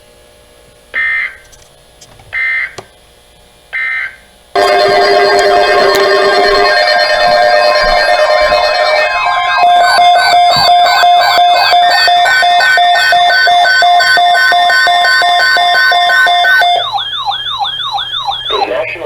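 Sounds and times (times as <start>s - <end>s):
falling siren sweeps: 4.6s - 19.0s
fast pulsing beeps: 4.6s - 19.0s.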